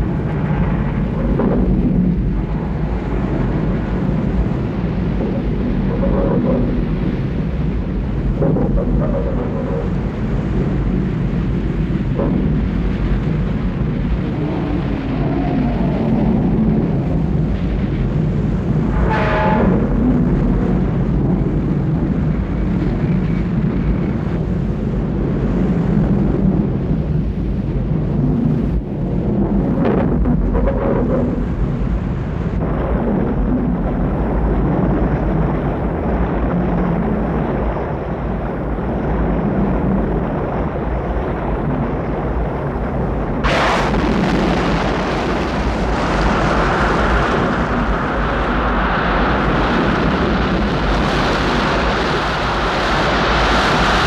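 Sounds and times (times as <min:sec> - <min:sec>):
deep continuous rumble: 0:00.0 - 0:54.0.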